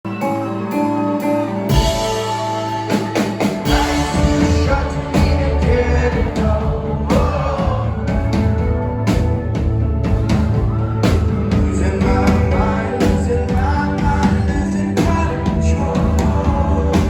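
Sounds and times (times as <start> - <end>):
person singing: 0.1 - 9.0, 11.5 - 17.0
indie rock band playing live: 0.1 - 17.0
drum hits: 3.1 - 15.3.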